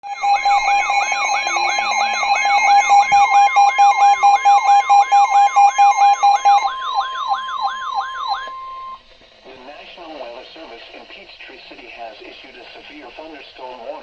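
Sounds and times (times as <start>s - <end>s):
rising siren-like sweeps: 0.0s - 9.0s
steady electronic alert tones: 0.0s - 9.1s.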